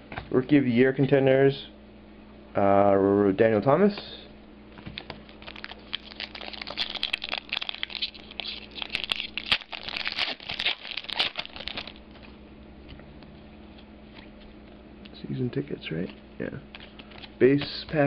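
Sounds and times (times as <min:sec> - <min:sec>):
cards rustling: 0:04.8 - 0:12.4
wrapper crinkling and tearing: 0:05.0 - 0:12.2.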